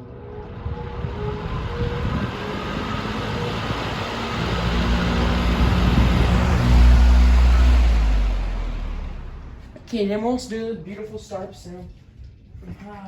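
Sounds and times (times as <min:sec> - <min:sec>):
deep low rumble: 0:00.0 - 0:10.3
electric fan motor hum: 0:00.0 - 0:10.6.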